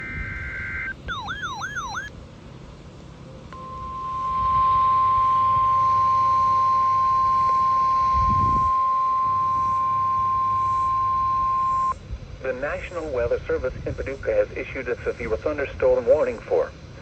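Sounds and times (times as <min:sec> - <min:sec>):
buzzy two-pitch data tone: 0:00.0 - 0:02.1, 0:03.5 - 0:12.0
steady warning alarm tone: 0:00.0 - 0:02.1, 0:03.5 - 0:12.0
warbling tone: 0:00.0 - 0:02.1
faint radio hiss: 0:12.4 - 0:17.0.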